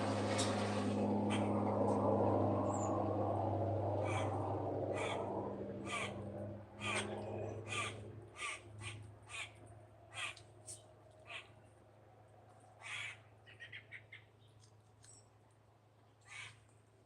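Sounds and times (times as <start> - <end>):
steady low hum: 0.0 - 12.5
crows cawing: 12.8 - 13.9.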